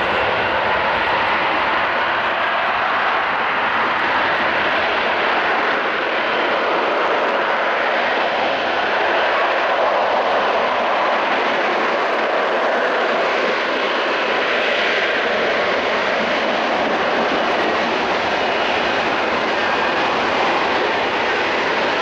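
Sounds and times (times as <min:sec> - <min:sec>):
jet engine roar: 0:00.0 - 0:22.0.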